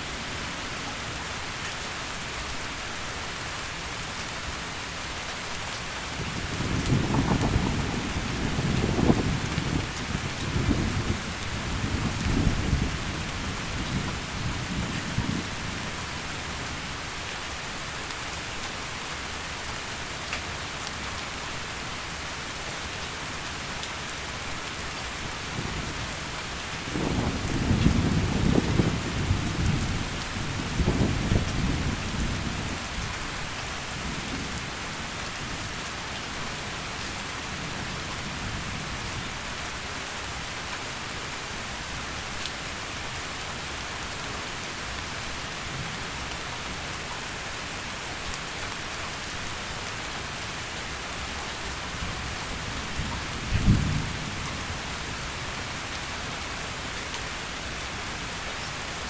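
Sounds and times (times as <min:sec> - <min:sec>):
heavy rain: 0:00.0 - 0:59.0
thunder rumbling: 0:06.5 - 0:13.2, 0:26.9 - 0:32.6, 0:53.0 - 0:54.6.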